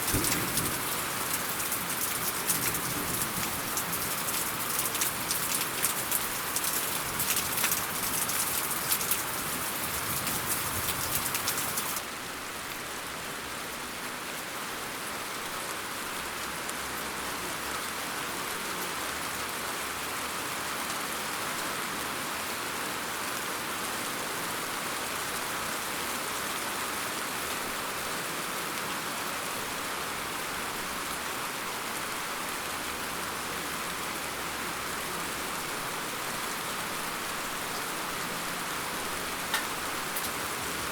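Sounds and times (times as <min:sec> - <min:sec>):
close raindrop impacts: 0:00.0 - 0:12.0, 0:37.3 - 0:40.9
rain falling: 0:00.0 - 0:40.9.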